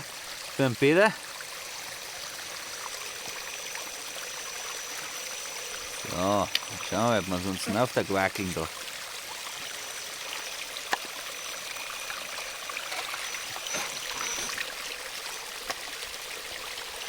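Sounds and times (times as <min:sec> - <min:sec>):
small waterfall running: 0:00.0 - 0:17.0
faint thin high whine: 0:03.0 - 0:07.8, 0:09.5 - 0:15.0.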